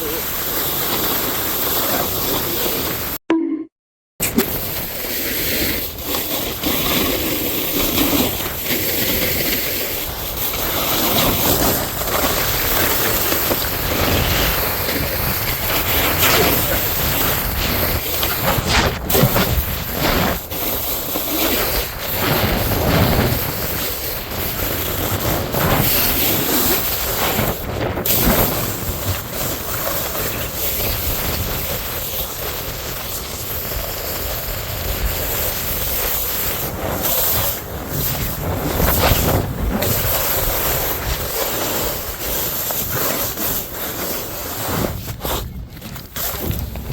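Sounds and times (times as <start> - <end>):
snowboard sliding through slushy snow: 0.0 - 3.2, 4.2 - 46.9
wind on microphone: 21.5 - 43.0.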